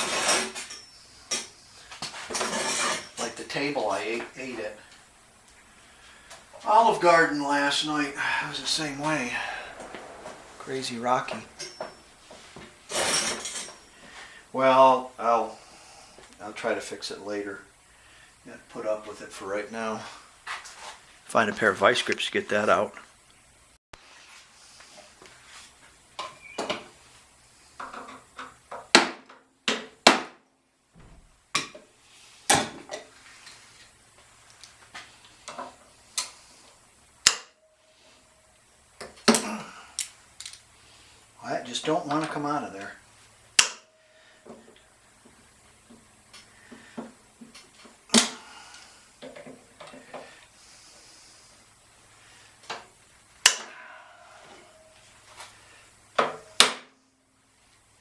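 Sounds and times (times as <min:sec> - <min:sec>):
metal hand tools clanking: 0:11.1 - 0:14.0.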